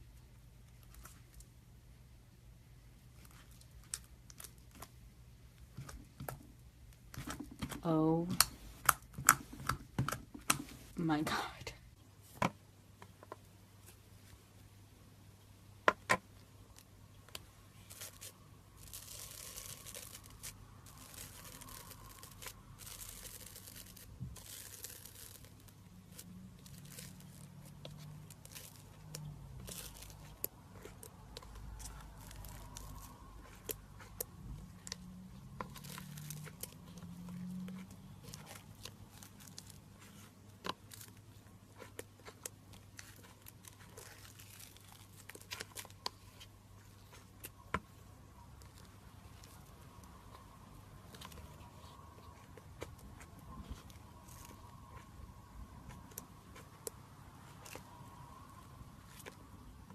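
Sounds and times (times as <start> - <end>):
slime crackling and tearing: 3.2 - 5.0, 16.7 - 48.0, 48.6 - 59.9.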